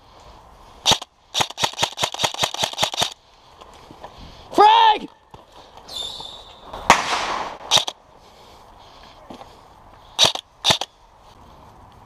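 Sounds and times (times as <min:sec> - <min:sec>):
sharp crack: 0:00.8 - 0:03.2, 0:06.7 - 0:08.0, 0:10.2 - 0:11.0
grenade bang: 0:06.8 - 0:07.7.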